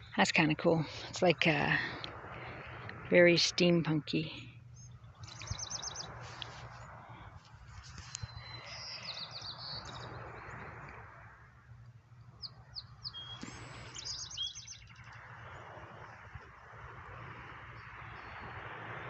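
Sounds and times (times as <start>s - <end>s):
small bird chirping: 4.8s - 6.1s, 8.2s - 10.2s, 12.4s - 15.1s.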